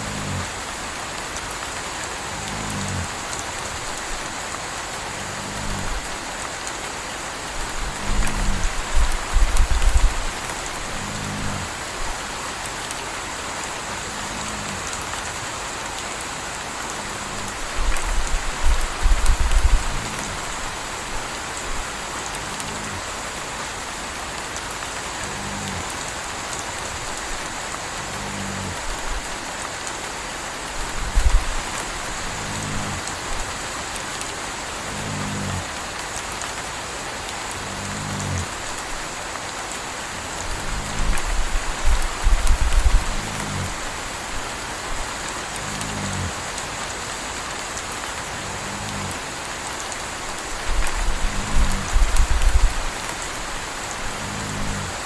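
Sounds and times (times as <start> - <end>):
puppy snoring: 0.0 - 0.5, 2.3 - 3.2, 5.1 - 6.2, 7.6 - 11.7, 17.0 - 20.9, 22.3 - 23.0, 25.2 - 25.9, 28.0 - 28.9, 30.8 - 33.1, 34.9 - 35.7, 37.6 - 38.6, 40.5 - 44.0, 45.6 - 46.4, 48.4 - 49.2, 50.6 - 53.1, 54.0 - 55.0
steady rain: 0.0 - 55.0
low rumbles: 7.4 - 12.3, 16.9 - 23.2, 50.6 - 55.0.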